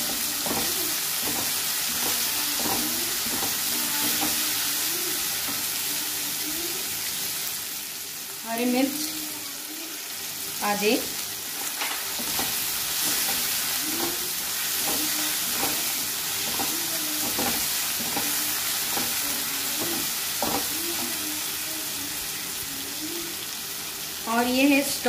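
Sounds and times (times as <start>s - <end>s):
spatula scraping a pan: 0.0s - 5.7s, 11.5s - 21.2s
vegetables sizzling in oil: 0.0s - 25.0s.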